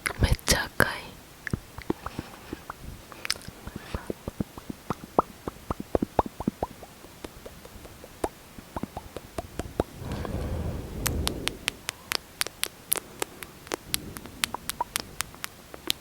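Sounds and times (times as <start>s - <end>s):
wet lip smacks and mouth pops: 1.5s - 9.9s, 12.4s - 16.0s.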